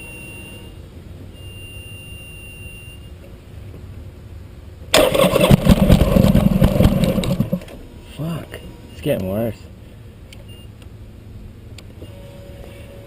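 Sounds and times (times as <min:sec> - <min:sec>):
faint steady hum: 0:00.0 - 0:13.0
motorcycle starter cranking: 0:04.9 - 0:07.8.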